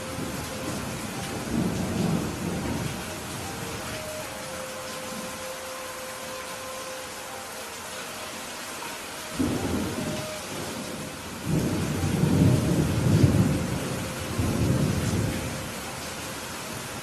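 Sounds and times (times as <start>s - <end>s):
thunder rumbling: 0.0s - 3.9s, 9.4s - 16.0s
steady rain: 0.0s - 17.0s.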